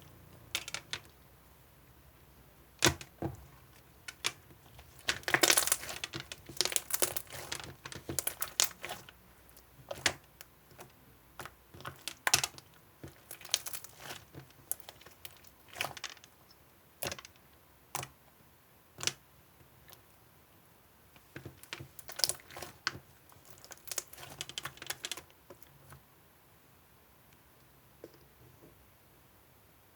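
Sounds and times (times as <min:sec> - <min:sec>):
crinkling and sharp clicks: 0:03.8 - 0:16.3, 0:21.2 - 0:26.0.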